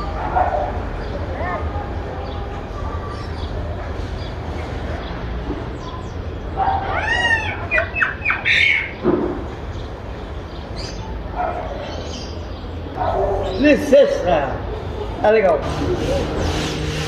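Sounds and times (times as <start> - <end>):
bird squawking: 6.7 - 9.0.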